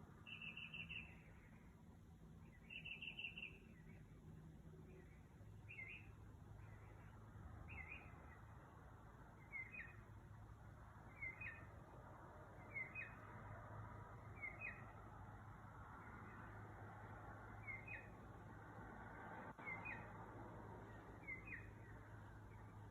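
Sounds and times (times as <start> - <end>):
low steady hum: 0.0 - 22.9
bird calling: 0.3 - 1.2.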